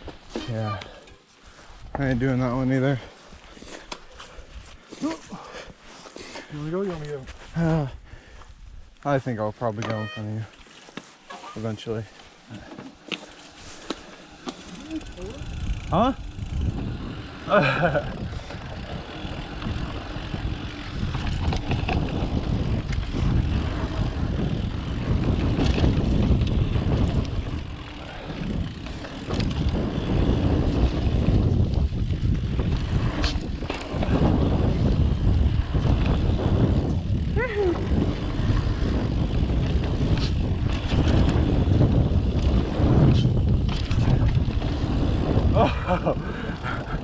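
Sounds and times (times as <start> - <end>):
bike rattles and knocks: 0.0 - 2.6, 9.7 - 47.0
bike tyres rumbling over dirt: 10.6 - 47.0
wind buffeting microphone: 13.6 - 47.0.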